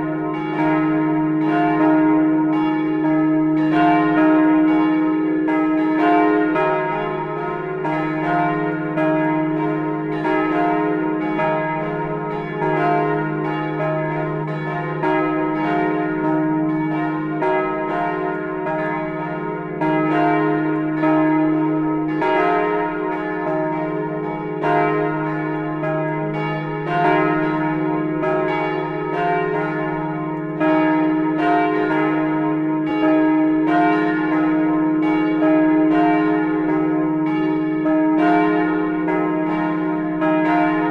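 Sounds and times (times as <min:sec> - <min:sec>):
church bells ringing: 0:00.0 - 0:40.9.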